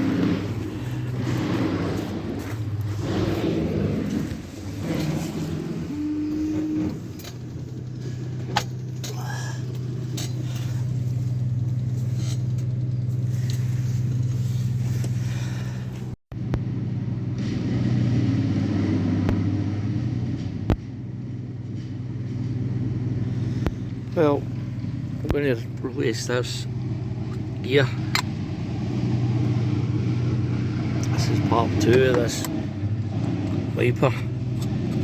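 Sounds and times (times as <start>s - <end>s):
wiper motor humming: 0.0s - 16.8s.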